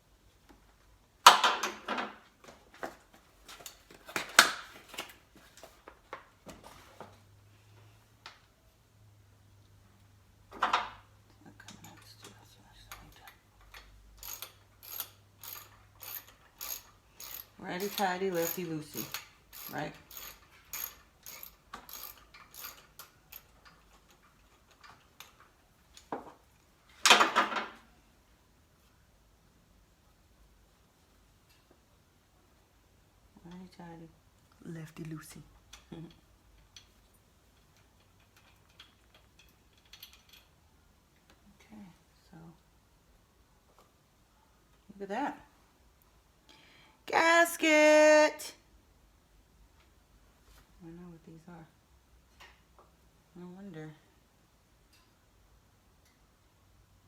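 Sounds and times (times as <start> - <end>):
hand tools clicking and knocking: 13.0 - 26.4.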